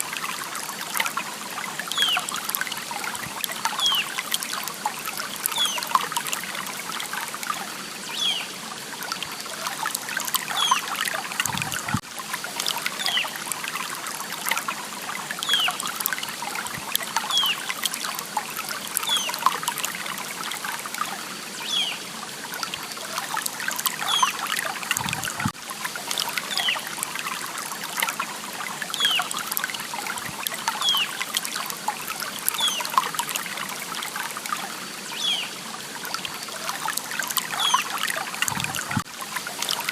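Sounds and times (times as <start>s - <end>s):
water trickling in stream: 0.0s - 39.9s.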